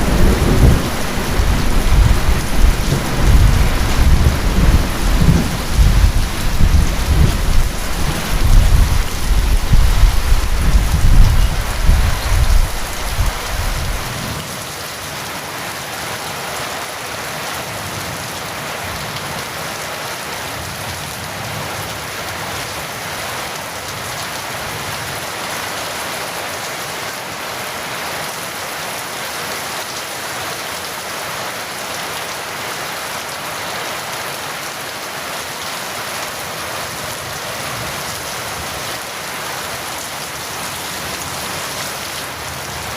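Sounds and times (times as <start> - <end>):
low rumble of thunder: 0.0 - 14.3
heavy rain: 0.0 - 42.9.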